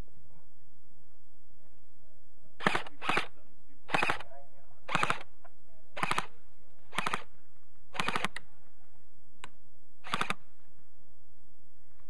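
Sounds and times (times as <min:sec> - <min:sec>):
airsoft gun firing bursts: 0:02.6 - 0:03.3, 0:03.9 - 0:04.2, 0:04.9 - 0:05.3, 0:06.0 - 0:07.3, 0:07.9 - 0:08.4, 0:10.0 - 0:10.4.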